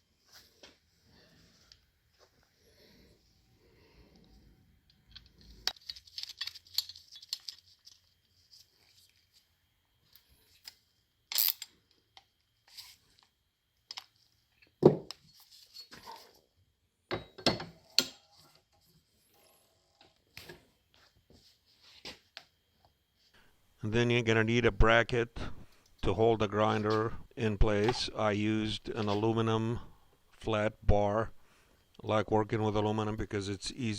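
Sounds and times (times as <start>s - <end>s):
small metal parts clinking: 5.1s - 8.2s, 11.3s - 11.8s.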